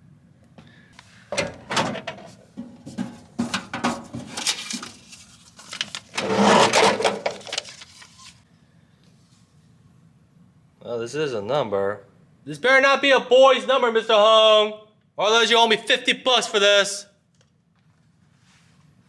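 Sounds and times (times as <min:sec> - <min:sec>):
vending machine clicks and knocks: 0:01.3 - 0:07.6
vending machine item clattering: 0:01.3 - 0:08.4.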